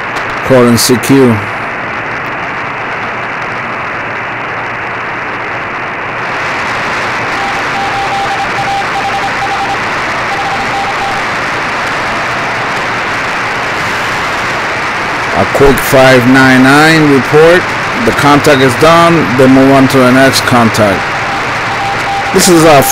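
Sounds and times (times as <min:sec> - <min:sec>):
shortwave radio hiss: 0:00.4 - 0:22.9
faint morse code tone: 0:07.4 - 0:11.2, 0:20.6 - 0:22.9.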